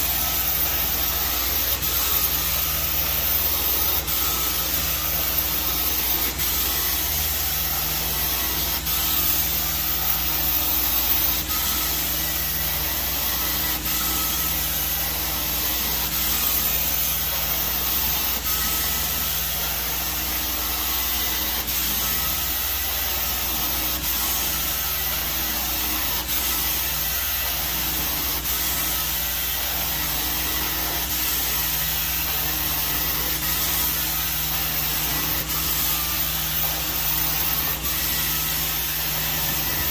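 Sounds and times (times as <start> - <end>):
carpet cleaning wand hissing: 0.0 - 39.9.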